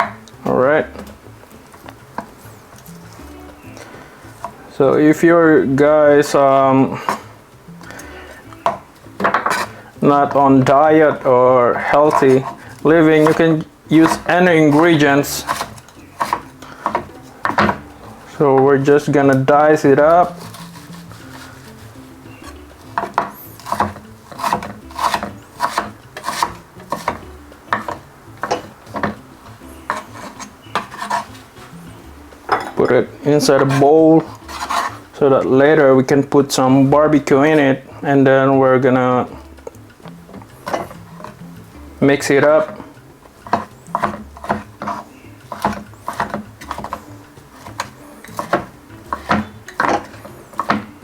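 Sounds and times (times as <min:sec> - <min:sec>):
knife chopping on cutting board: 0:08.6 - 0:09.7, 0:12.0 - 0:17.9, 0:22.4 - 0:29.3, 0:29.9 - 0:31.4, 0:43.4 - 0:50.9.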